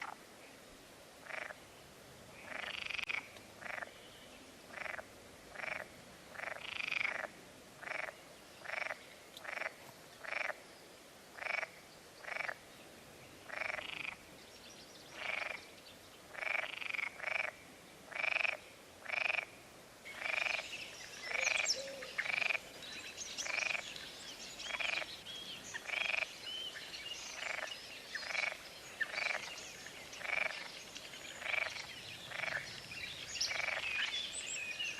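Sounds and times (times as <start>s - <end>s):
frogs croaking: 1.2s - 1.7s, 2.3s - 4.0s, 4.7s - 10.7s, 11.3s - 12.6s, 13.4s - 14.3s, 15.1s - 34.9s
bird chirps: 20.1s - 34.9s.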